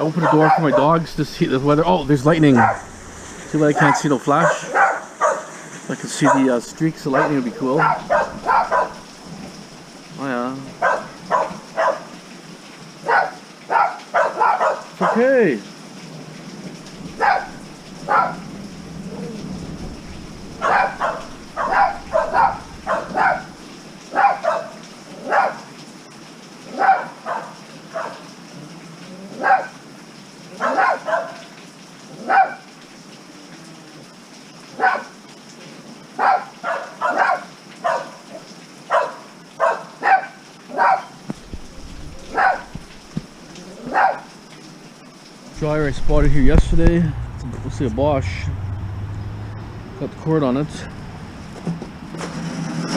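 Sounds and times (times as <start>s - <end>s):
heavy rain hissing: 0.0s - 52.9s
dog barking: 0.1s - 1.0s, 2.5s - 3.0s, 3.7s - 5.5s, 6.2s - 9.1s, 10.8s - 12.2s, 13.0s - 15.3s, 17.1s - 18.6s, 20.6s - 25.7s, 26.7s - 28.3s, 29.3s - 29.8s, 30.6s - 31.5s, 32.2s - 32.7s, 34.7s - 35.2s, 36.2s - 41.2s, 42.2s - 42.9s, 43.8s - 44.3s.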